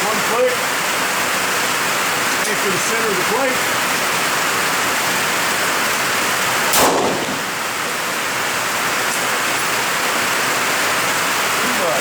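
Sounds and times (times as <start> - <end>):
heavy rain hissing: 0.0 - 12.0
rifle shot: 6.7 - 7.5.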